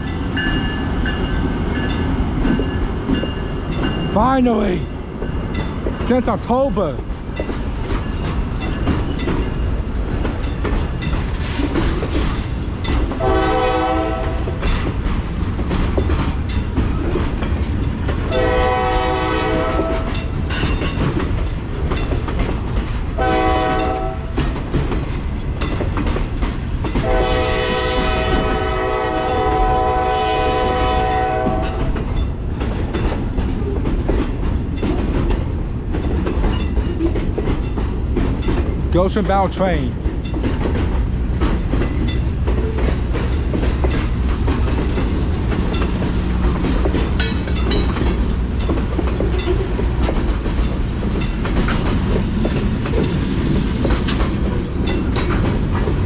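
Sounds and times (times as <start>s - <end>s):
train rumble: 0.0s - 56.0s
wheels clacking over rail joints: 0.0s - 56.0s
locomotive air horn blasts: 13.2s - 14.6s, 18.3s - 20.1s, 23.2s - 24.3s, 27.0s - 31.9s.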